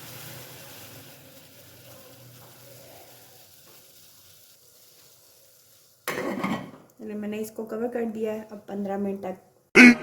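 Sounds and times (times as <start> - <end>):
tea boiling in a pot: 0.0 - 7.0.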